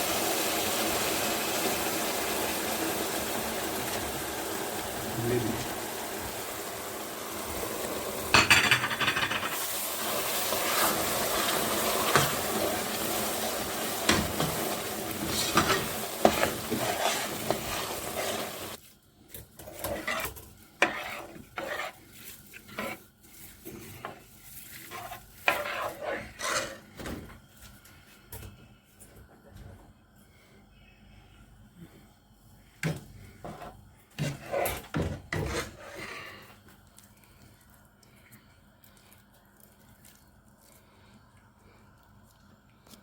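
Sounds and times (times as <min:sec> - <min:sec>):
honey sizzling: 0:00.0 - 0:27.0, 0:33.2 - 0:42.7
spoon scraping a pot: 0:15.2 - 0:18.8, 0:19.6 - 0:26.9, 0:33.4 - 0:36.4.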